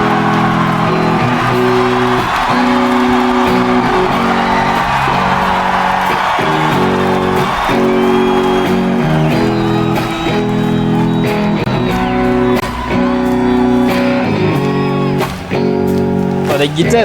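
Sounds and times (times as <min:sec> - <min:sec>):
guitar playing soft chords: 0:00.0 - 0:17.0.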